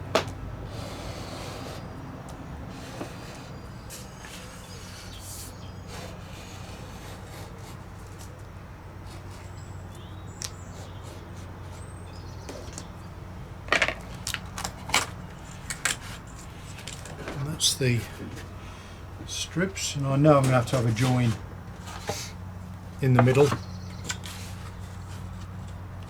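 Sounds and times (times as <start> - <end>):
faint scrapes of wood: 0.7 - 2.0, 2.7 - 8.3.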